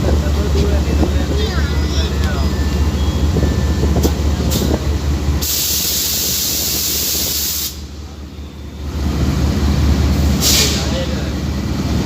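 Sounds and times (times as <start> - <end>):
train rumbling: 0.0 - 12.0
loud even hiss: 5.4 - 8.0, 10.3 - 11.1.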